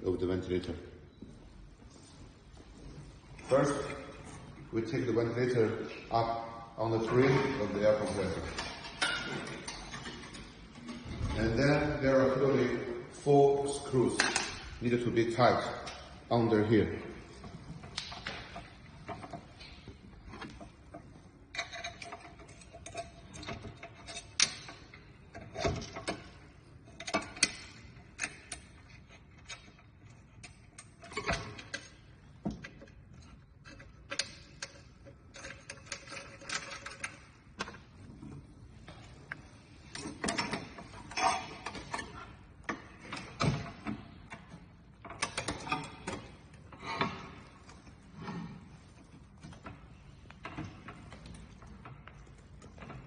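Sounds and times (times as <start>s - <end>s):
screws and metal parts clattering: 7.0s - 11.2s, 17.4s - 38.4s.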